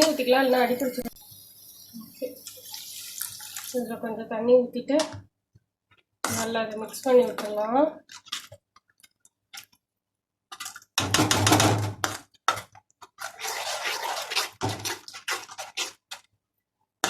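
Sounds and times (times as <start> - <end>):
water poured into frying pan: 0.0 - 4.0, 13.2 - 15.9
spatula scraping and stirring: 6.0 - 9.8, 10.5 - 16.7.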